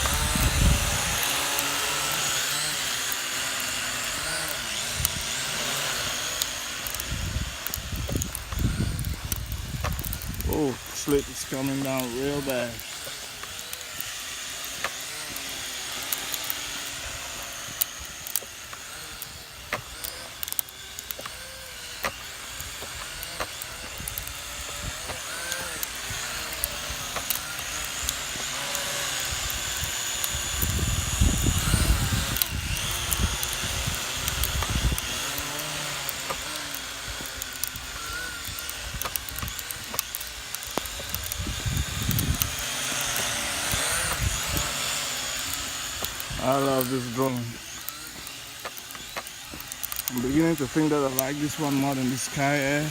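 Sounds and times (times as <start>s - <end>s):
wind buffeting microphone: 0.0s - 2.3s, 4.0s - 12.9s, 22.5s - 47.6s
drone propellers whining: 0.0s - 52.9s.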